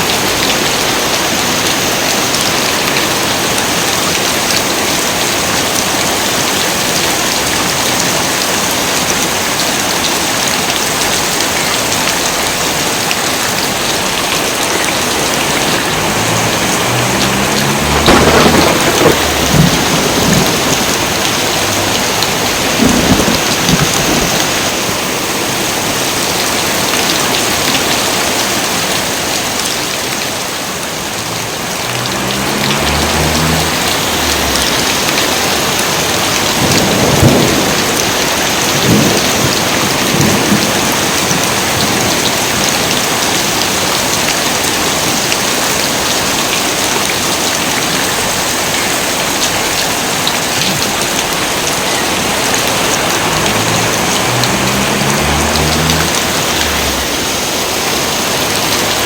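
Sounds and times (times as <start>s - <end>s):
heavy rain pouring: 0.0s - 59.0s
thunder rumbling: 14.9s - 25.0s, 31.0s - 42.3s, 51.2s - 58.7s.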